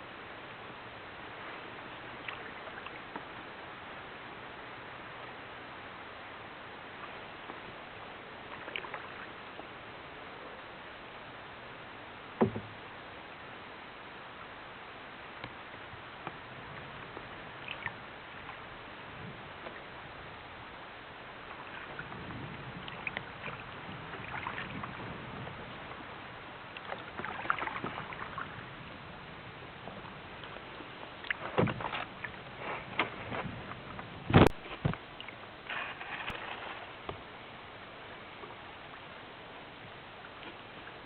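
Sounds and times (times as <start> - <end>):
paddle knocking against hull: 12.4 - 12.8, 31.3 - 35.1.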